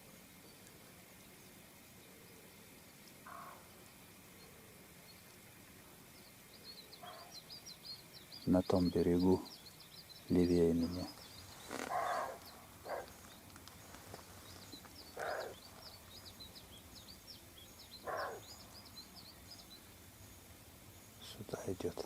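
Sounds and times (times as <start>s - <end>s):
small birds chirping: 0.0s - 22.0s
distant raccoon dog barking: 3.2s - 3.7s, 7.0s - 7.4s, 11.7s - 13.3s, 15.0s - 16.2s, 18.0s - 18.8s.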